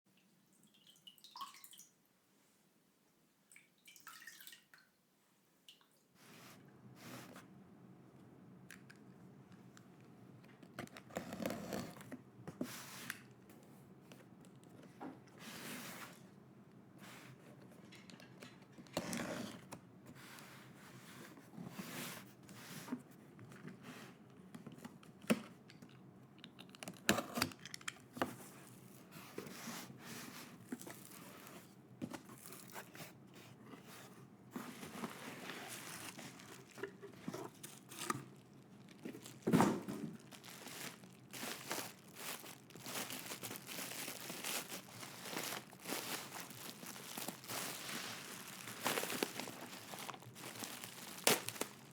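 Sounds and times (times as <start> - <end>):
plastic and paper tearing: 34.9 - 51.9.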